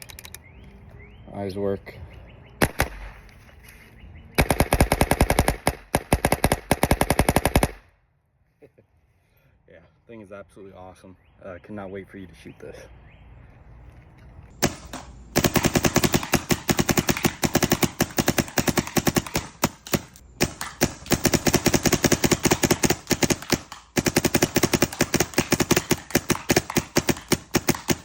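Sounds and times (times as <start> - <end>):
paintball marker rapid firing: 2.6 - 3.2, 4.4 - 7.8, 14.6 - 28.0.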